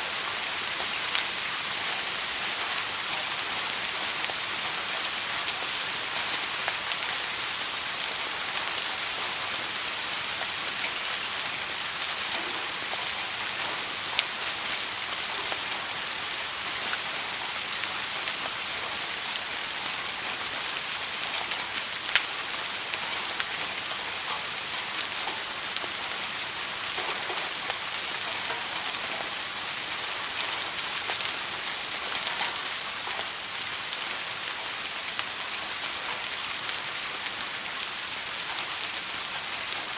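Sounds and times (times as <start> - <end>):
soft rain falling: 0.0 - 39.9
sharp raindrop ticks: 21.2 - 39.9.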